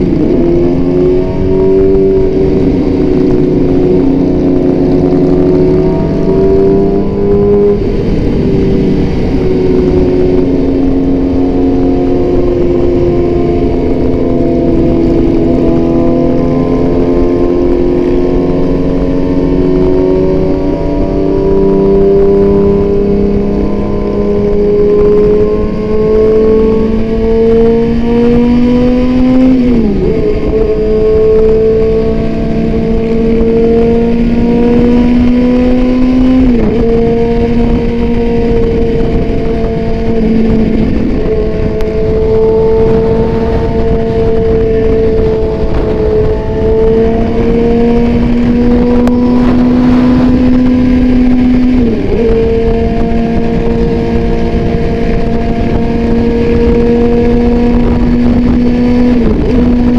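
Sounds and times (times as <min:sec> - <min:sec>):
motorcycle engine at speed: 0:00.0 - 0:59.9
steady rush of noise: 0:00.0 - 0:59.9.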